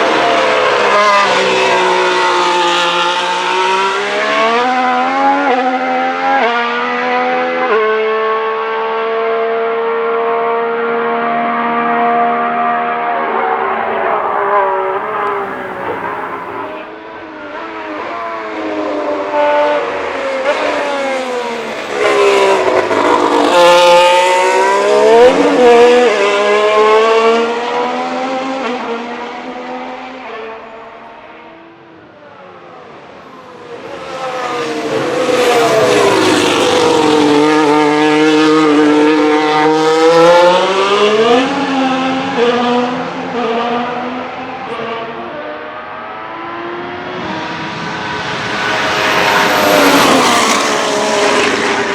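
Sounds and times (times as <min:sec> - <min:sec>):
racing car engine passing: 0:11.1 - 0:16.8, 0:33.4 - 0:44.2, 0:46.1 - 0:51.9.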